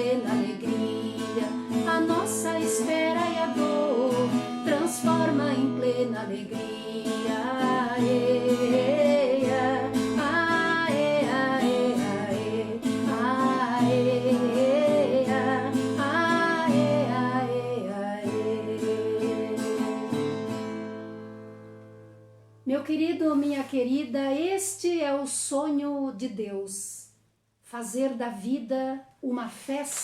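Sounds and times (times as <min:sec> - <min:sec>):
strummed acoustic guitar: 0:00.0 - 0:22.6.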